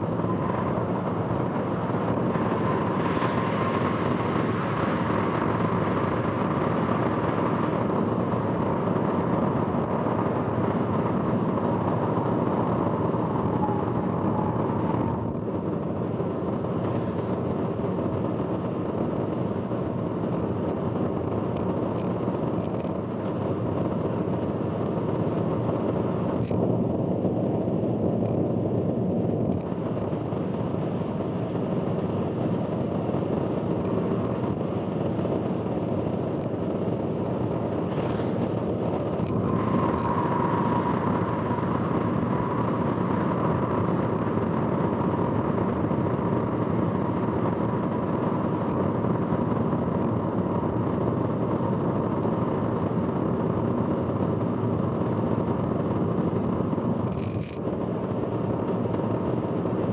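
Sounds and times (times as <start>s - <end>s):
road and tyre noise: 0.0s - 59.9s
steady whine: 10.2s - 26.8s, 56.4s - 59.9s.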